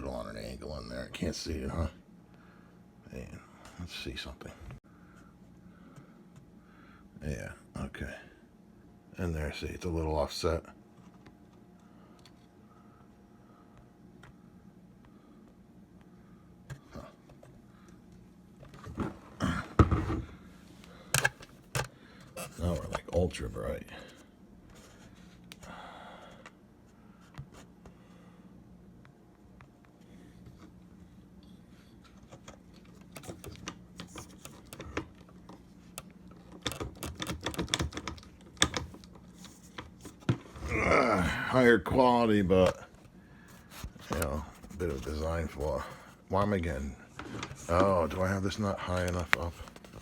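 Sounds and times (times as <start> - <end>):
hardware clicks and taps: 21.1 - 21.9, 32.3 - 40.4.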